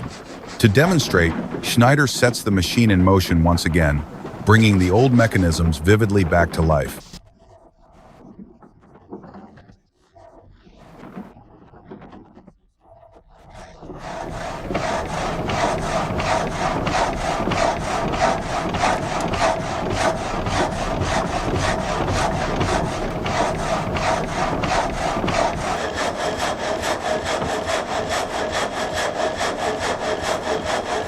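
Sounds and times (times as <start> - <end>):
frame saw strokes: 0.0 - 7.2, 13.8 - 31.0
steady hum: 14.0 - 31.0.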